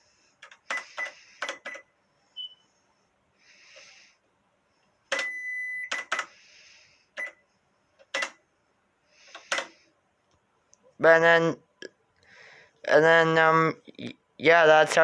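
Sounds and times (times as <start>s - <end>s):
electronic beep: 2.4s - 2.7s
cash register key clicks: 5.9s - 6.3s.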